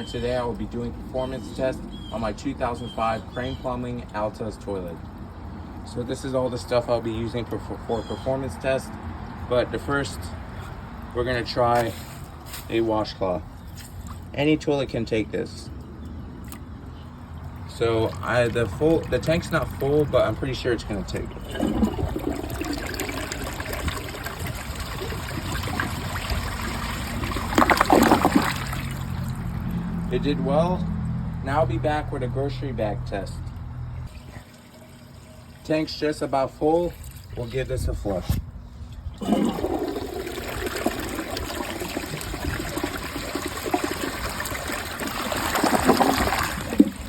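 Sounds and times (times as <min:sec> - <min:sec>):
water gurgling: 0:17.5 - 0:29.7, 0:39.2 - 0:47.0
toilet flushing: 0:17.8 - 0:29.3, 0:39.2 - 0:47.0.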